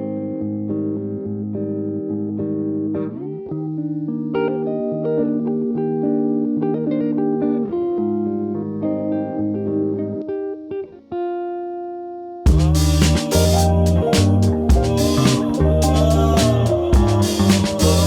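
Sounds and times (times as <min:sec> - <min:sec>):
plucked guitar chords: 0:12.5 - 0:18.0.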